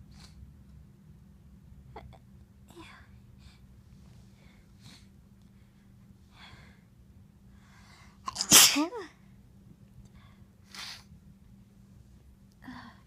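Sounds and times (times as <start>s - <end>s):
person sneezing loudly: 8.3s - 9.0s.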